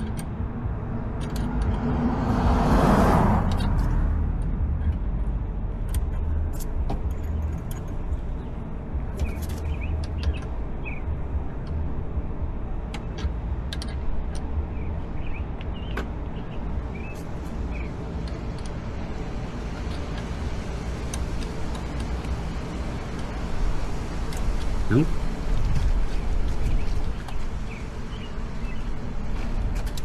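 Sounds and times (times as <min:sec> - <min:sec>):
rushing noise: 0:00.0 - 0:06.8
steady low rumble: 0:00.0 - 0:30.0.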